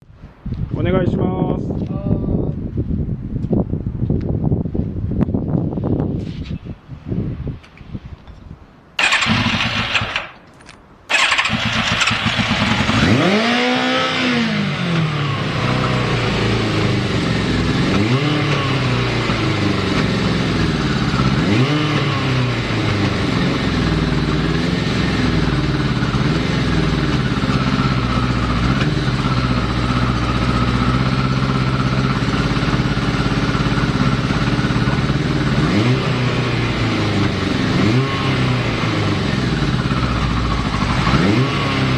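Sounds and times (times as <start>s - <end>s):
electric starter cranking: 9.0s - 10.4s, 11.1s - 13.3s
motorcycle engine idling unevenly: 11.1s - 41.9s.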